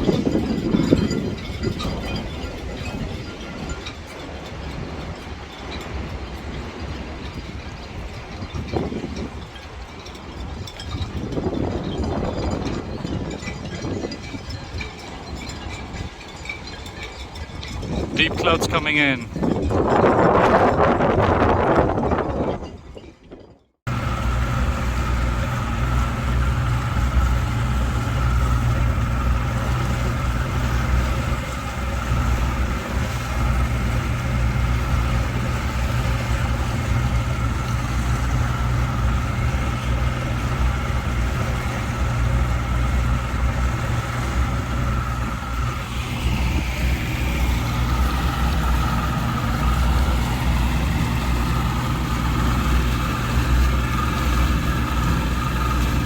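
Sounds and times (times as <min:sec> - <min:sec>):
car engine running: 0:23.9 - 0:56.0
steady whine: 0:23.9 - 0:56.0.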